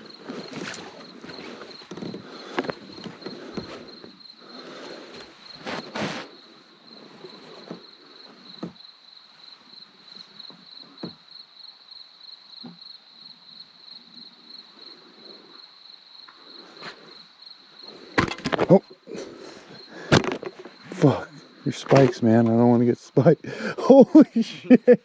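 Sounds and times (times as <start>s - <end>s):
crickets chirping: 0.0s - 25.0s
handling rustle: 0.1s - 4.2s, 5.0s - 6.4s.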